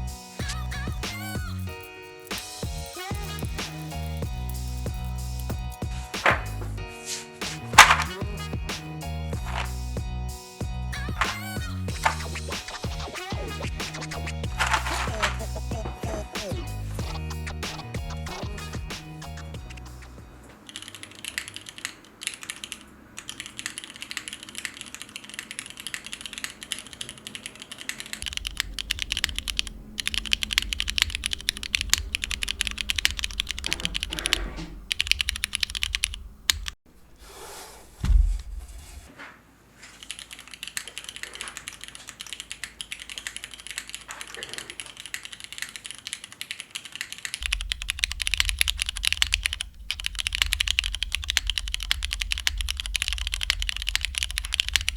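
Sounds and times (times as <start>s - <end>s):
mechanical keyboard typing: 20.7s - 36.8s, 40.0s - 54.9s
low thump: 38.0s - 39.0s.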